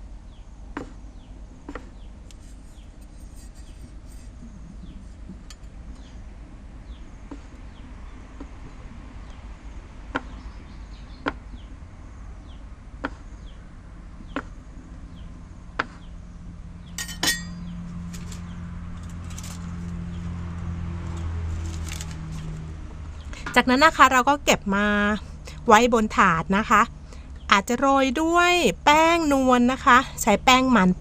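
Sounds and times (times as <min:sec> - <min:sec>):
knife blade clink: 0:17.0 - 0:17.7.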